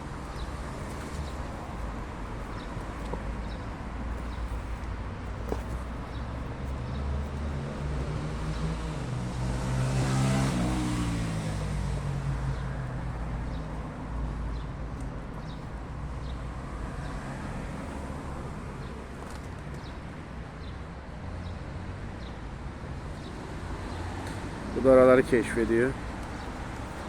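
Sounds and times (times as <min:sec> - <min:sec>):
low traffic rumble: 0:00.0 - 0:27.0
car passing by: 0:06.8 - 0:13.5.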